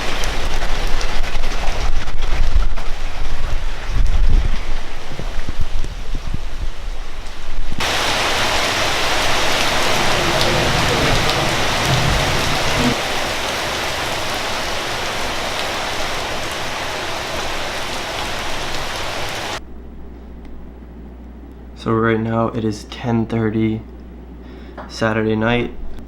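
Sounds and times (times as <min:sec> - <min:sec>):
heavy rain pouring: 0:00.0 - 0:19.6
low rumble: 0:09.5 - 0:14.4.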